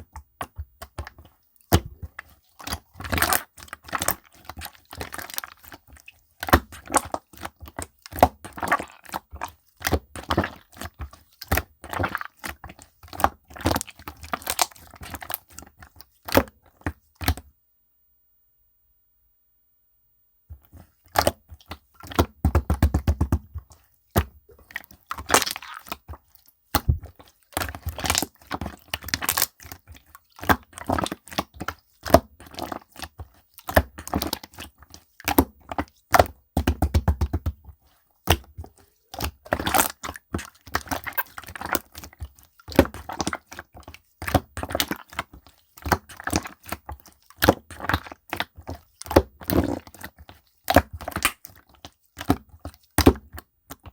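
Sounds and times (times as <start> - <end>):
slime crackling and popping: 25.1 - 26.1, 27.6 - 32.2.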